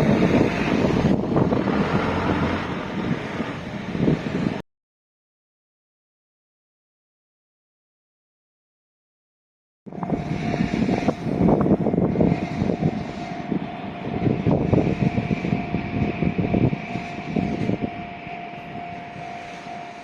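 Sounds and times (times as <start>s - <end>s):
freight train rumbling past: 0.0s - 4.6s, 9.9s - 20.0s
steady high tone: 9.9s - 20.0s.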